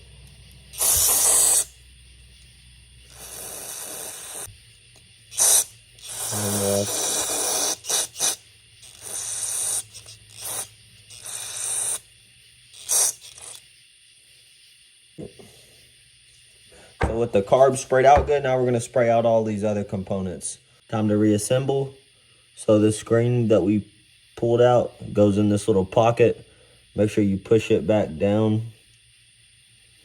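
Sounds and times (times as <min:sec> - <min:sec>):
aerosol spray hissing: 0:00.0 - 0:19.4.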